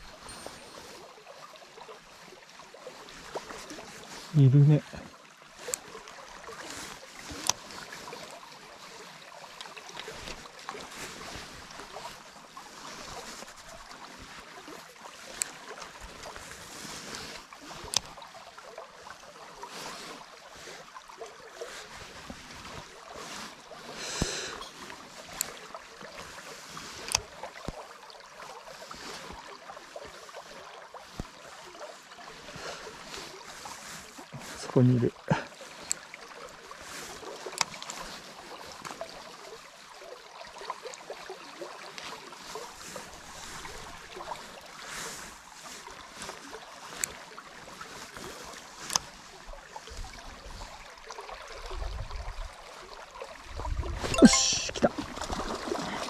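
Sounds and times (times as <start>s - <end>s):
stream water rushing: 0.0s - 56.0s.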